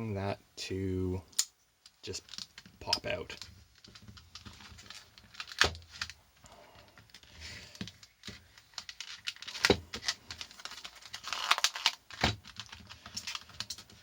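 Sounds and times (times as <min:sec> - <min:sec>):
plastic packaging clicks: 0:01.4 - 0:06.2, 0:07.8 - 0:14.0
packaging crinkling and tearing: 0:02.0 - 0:06.2, 0:07.1 - 0:14.0.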